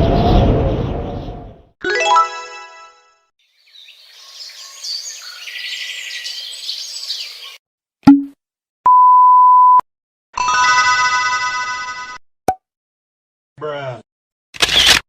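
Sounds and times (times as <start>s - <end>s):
birds chirping: 3.4s - 7.6s
short low bloop: 8.1s - 8.4s
steady censor beep: 8.9s - 9.8s.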